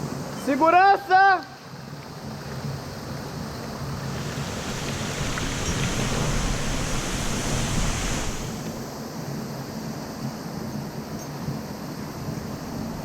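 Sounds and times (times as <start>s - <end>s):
waterfall rushing: 4.1s - 8.9s.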